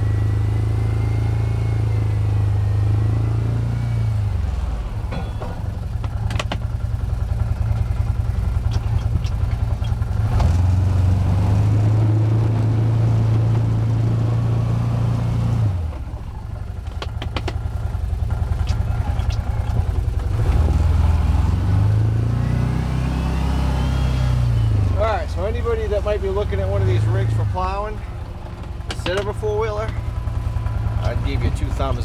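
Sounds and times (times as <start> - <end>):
engine running under load: 0.0 - 32.0
sharp metal clanks: 5.0 - 6.7.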